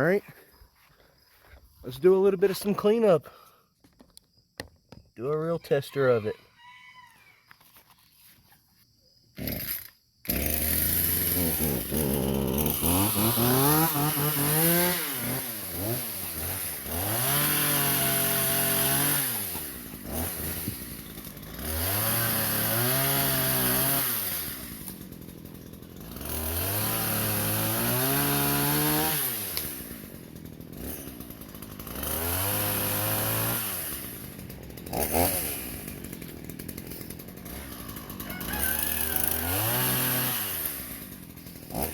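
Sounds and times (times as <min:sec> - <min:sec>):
chainsaw revving and idling: 0:09.4 - 0:41.9.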